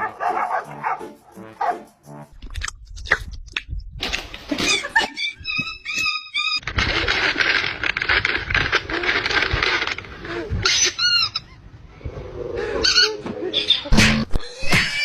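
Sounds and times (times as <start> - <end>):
animal harsh crying: 12.6 - 15.0.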